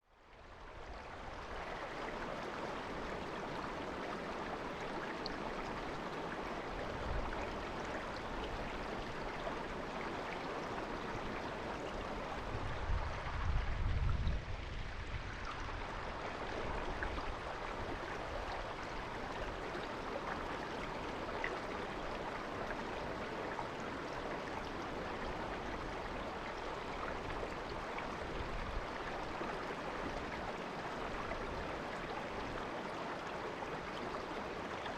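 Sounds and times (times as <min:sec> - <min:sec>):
river babbling over stones: 0:15.1 - 0:34.9.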